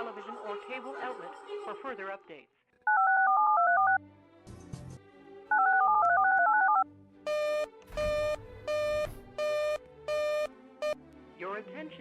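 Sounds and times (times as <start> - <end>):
touch-tone dialing tones: 2.9 - 4.0, 5.5 - 11.0.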